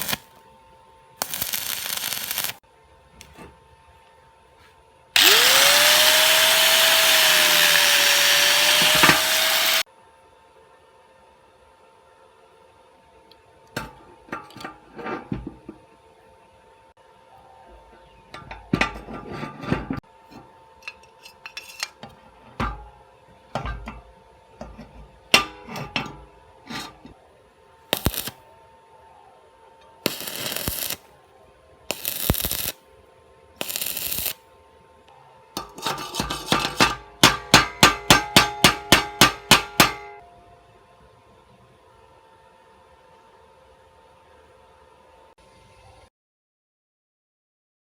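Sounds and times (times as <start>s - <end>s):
short noisy bursts: 5.2s - 9.8s
metal parts clinking: 20.8s - 22.0s, 35.6s - 37.1s
hammer blows on metal: 35.6s - 40.2s.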